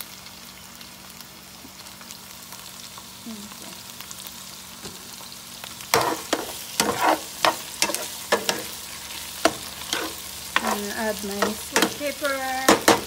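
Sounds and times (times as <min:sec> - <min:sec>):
food sizzling in a pan: 0:00.0 - 0:13.0
utensil scraping a pan: 0:05.9 - 0:08.8, 0:09.4 - 0:13.0.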